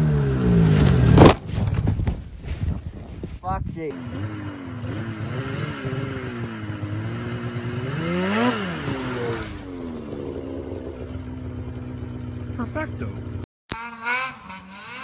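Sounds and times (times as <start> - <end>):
snowmobile engine revving: 3.9 - 15.0.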